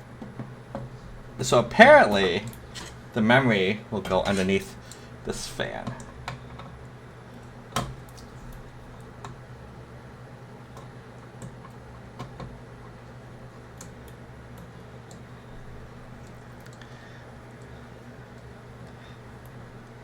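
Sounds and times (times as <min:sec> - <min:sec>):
steady low hum: 0:00.0 - 0:20.0
clicks and taps of computer parts: 0:05.9 - 0:06.8, 0:07.7 - 0:08.3, 0:10.8 - 0:12.6.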